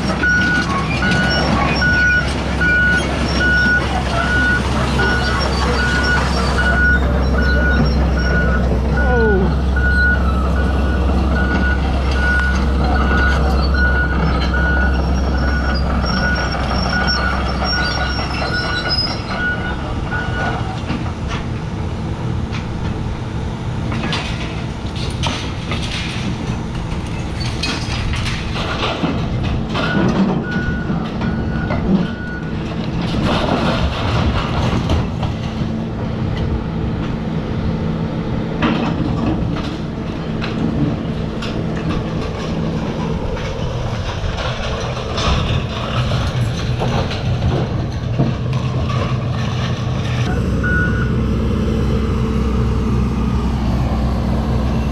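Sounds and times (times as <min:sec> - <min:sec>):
excavator diesel engine running: 0:00.0 - 0:54.9
backup alarm beeping: 0:00.2 - 0:14.9, 0:50.3 - 0:51.3.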